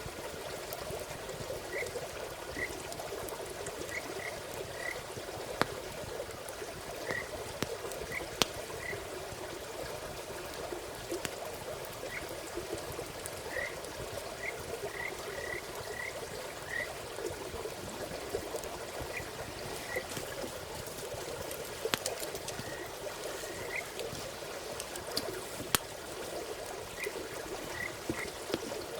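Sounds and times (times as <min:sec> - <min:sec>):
campfire crackling: 0:00.0 - 0:28.9
frogs chirping: 0:01.6 - 0:02.9, 0:03.8 - 0:05.2, 0:07.0 - 0:09.1, 0:12.0 - 0:12.4, 0:13.4 - 0:17.0, 0:18.8 - 0:21.3, 0:22.0 - 0:28.9.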